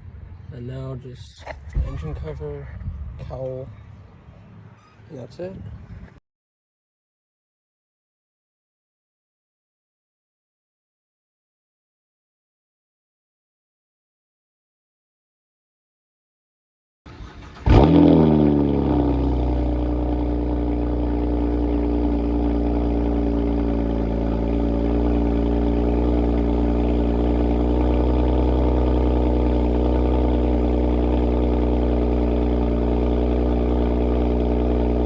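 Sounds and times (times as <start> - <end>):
car engine revving then idling: 17.1 - 35.0.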